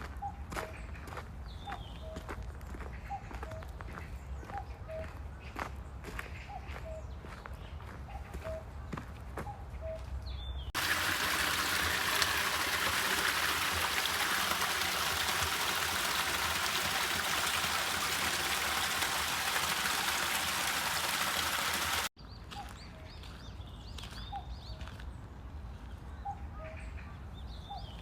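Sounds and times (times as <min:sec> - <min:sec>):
stream rushing and babbling: 0:10.8 - 0:22.1.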